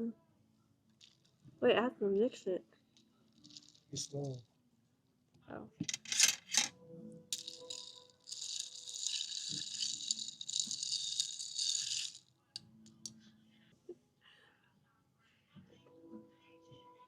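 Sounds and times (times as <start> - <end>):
ice rattling in cup: 3.3 - 4.4, 7.4 - 12.2.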